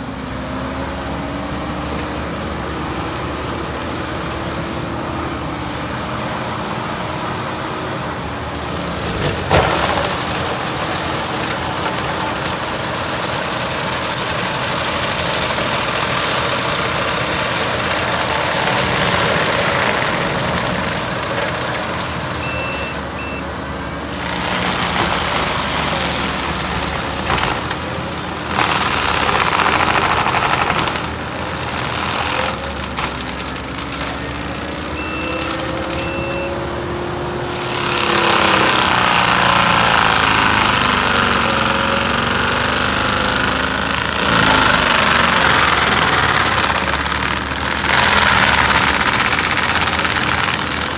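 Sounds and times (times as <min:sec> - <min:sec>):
diesel engine working hard: 0:00.0 - 0:50.9
mulcher grinding through brush: 0:00.0 - 0:50.9
short reversing beeps: 0:22.4 - 0:23.5, 0:35.0 - 0:36.6
sharp crack: 0:24.3 - 0:33.8.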